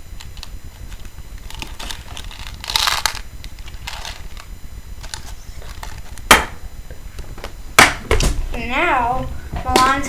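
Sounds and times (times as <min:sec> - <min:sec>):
sharp knock: 0:06.3 - 0:06.6.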